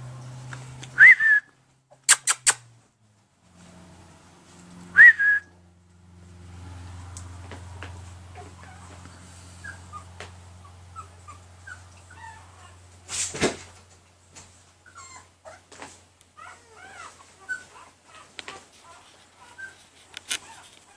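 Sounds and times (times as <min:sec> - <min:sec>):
puppy whimpering: 0:08.4 - 0:12.9, 0:14.8 - 0:15.7, 0:16.4 - 0:20.9
rustle or thump: 0:13.1 - 0:14.6.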